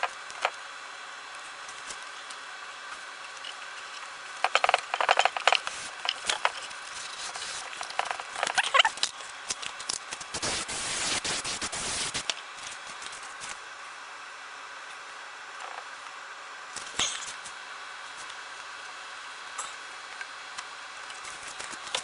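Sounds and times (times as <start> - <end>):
small tools clicking and rattling: 3.2 - 10.1
steady hiss: 10.1 - 13.6.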